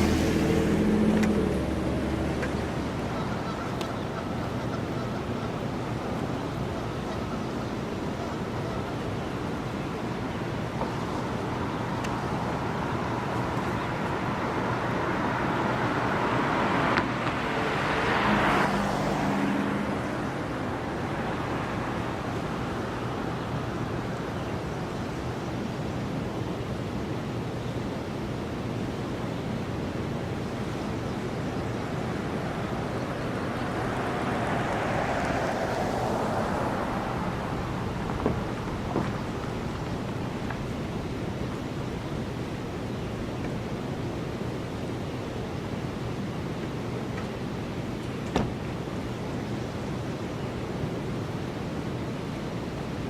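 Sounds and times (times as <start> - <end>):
car passing: 0.0 - 5.1, 11.0 - 25.0, 29.6 - 42.8
distant traffic: 0.0 - 53.0
wind: 0.0 - 53.0.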